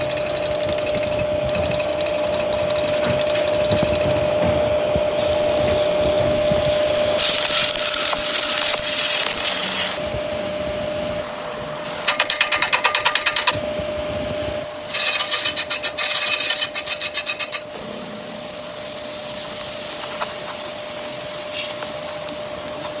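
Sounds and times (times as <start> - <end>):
rhythmic scraping strokes: 0.0 - 11.3, 13.2 - 17.7
steady hum: 0.0 - 11.9, 13.3 - 15.8
metal grinding rasp: 0.4 - 11.2.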